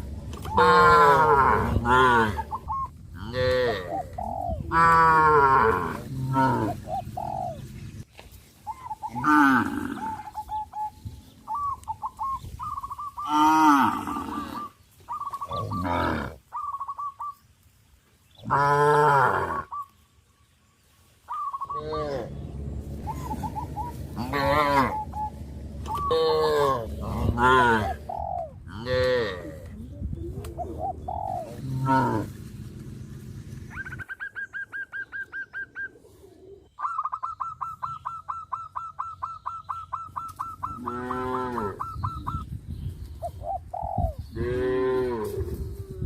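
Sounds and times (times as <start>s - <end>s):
cattle mooing: 0.5s - 2.5s, 4.7s - 6.8s, 21.7s - 28.1s, 31.5s - 32.4s, 40.8s - 41.8s
short bird notes: 21.3s - 27.2s.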